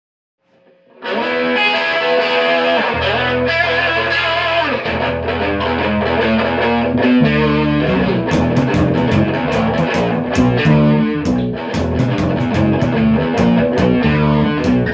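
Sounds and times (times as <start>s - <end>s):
distorted electric guitar chords: 0.8s - 14.9s
low bass line: 6.9s - 14.9s
sharp percussion hits: 8.2s - 14.9s.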